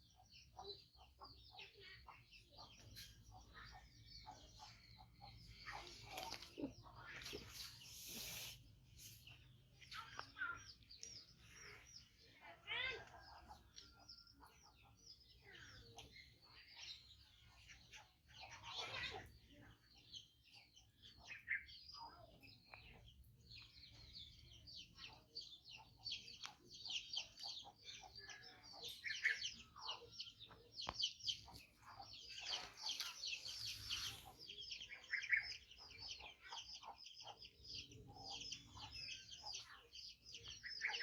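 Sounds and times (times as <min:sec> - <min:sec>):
birds chirping: 0:00.0 - 0:41.0.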